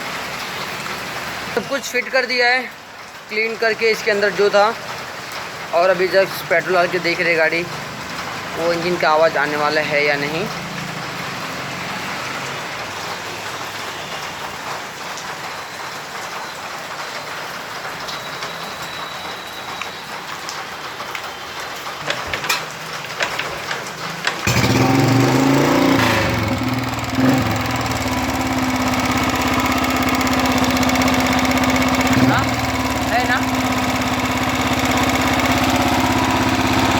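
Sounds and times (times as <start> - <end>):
motorcycle engine starting and idling: 24.4 - 36.9.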